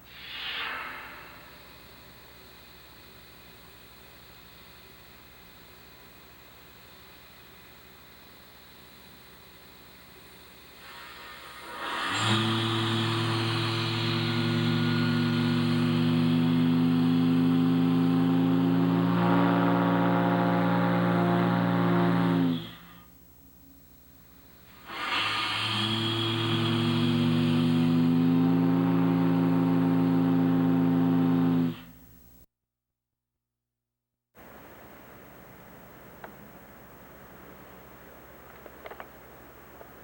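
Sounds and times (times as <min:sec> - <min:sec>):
steam gong blasts: 0:00.0 - 0:02.6, 0:10.8 - 0:23.0, 0:24.8 - 0:32.0.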